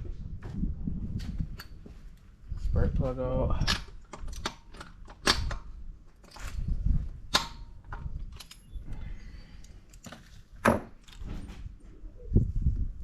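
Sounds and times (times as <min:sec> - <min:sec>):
metallic clinks and clicks: 0:08.3 - 0:08.8.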